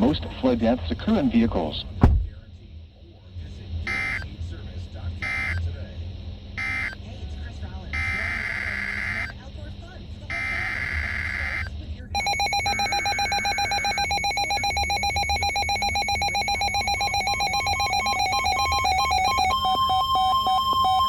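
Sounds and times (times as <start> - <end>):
pulsing two-tone alert signal: 10.3 - 21.0
buzzing digital data burst: 10.4 - 21.0.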